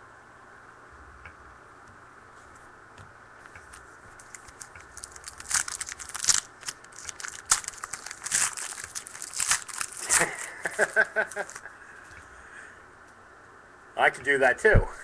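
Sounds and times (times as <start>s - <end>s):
foil wrapper tearing: 4.2s - 11.7s.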